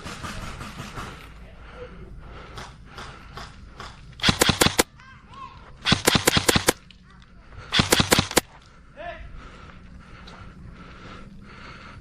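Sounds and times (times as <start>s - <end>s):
airsoft gun rapid shots: 4.2s - 4.9s, 5.8s - 6.8s, 7.7s - 8.5s.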